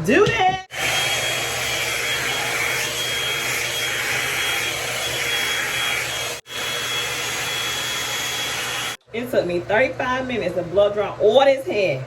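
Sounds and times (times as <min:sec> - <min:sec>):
hot-air brush airflow rush: 0:00.7 - 0:09.0.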